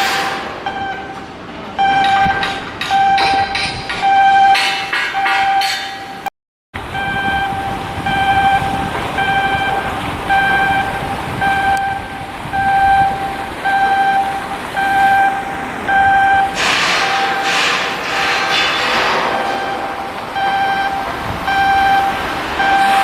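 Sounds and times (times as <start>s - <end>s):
electronic warning beeper: 0.0s - 6.3s, 7.0s - 17.6s, 18.3s - 23.0s
machinery noise: 0.0s - 23.0s
loud rushing noise: 15.4s - 23.0s.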